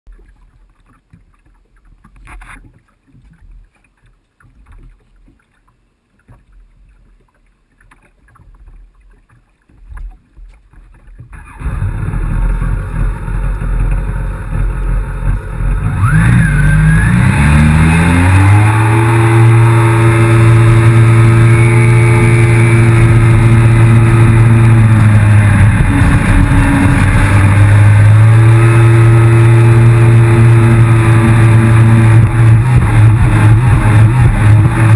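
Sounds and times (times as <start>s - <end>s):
jet ski engine revving: 11.3s - 34.9s.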